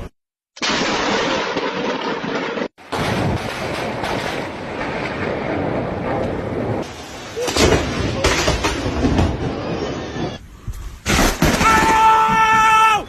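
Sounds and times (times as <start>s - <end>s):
low rumbling thunder: 0.6s - 10.4s.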